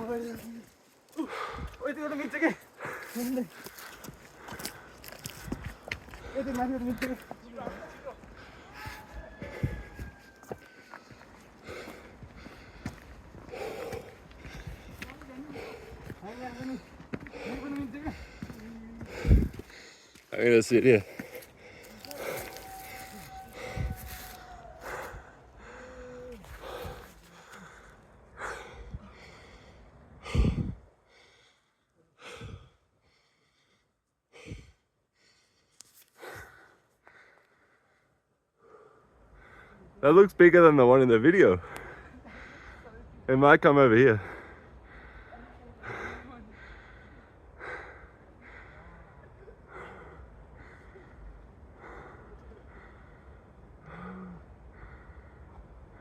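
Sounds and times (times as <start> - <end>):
person breathing heavily: 1.1 - 40.0, 41.6 - 43.3, 44.0 - 56.0.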